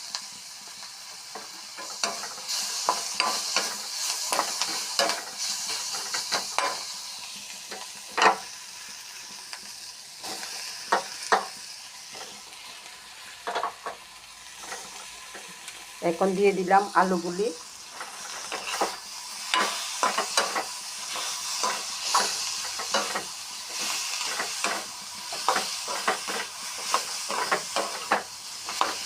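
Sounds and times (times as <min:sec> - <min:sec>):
masala sizzling in oil: 0:00.0 - 0:29.0
spatula scraping a pan: 0:01.2 - 0:07.0, 0:10.2 - 0:12.5, 0:13.2 - 0:15.7, 0:17.8 - 0:29.0.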